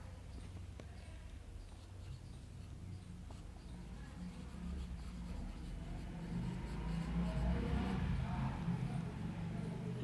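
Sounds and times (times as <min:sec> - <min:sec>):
low background hum: 0:00.0 - 0:10.0
pen scratching on paper: 0:01.6 - 0:08.2.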